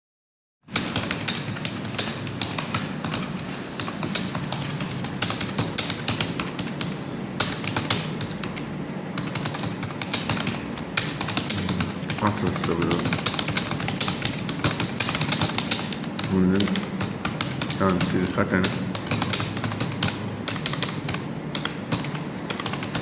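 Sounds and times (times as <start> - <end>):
fast typing on keyboard: 0.7 - 23.0.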